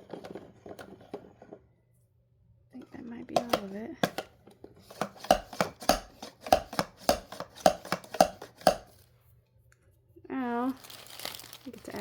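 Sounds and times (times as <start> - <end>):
sharp hard plastic knocks: 3.4 - 4.3, 4.9 - 9.0.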